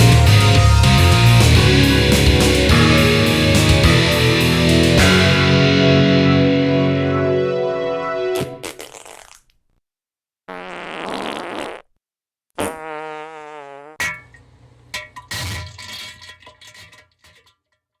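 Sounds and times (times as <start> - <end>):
song music: 0.0 - 8.6
novelty fart noises: 8.4 - 9.6, 10.5 - 12.0, 12.6 - 14.0, 15.3 - 15.8.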